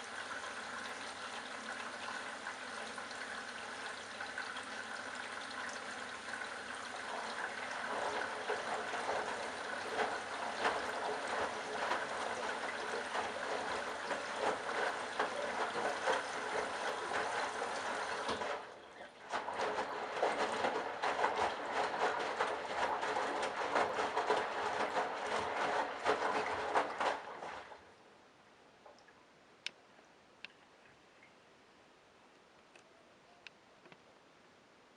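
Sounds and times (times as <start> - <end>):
water rushing into washing machine: 0.0 - 28.0.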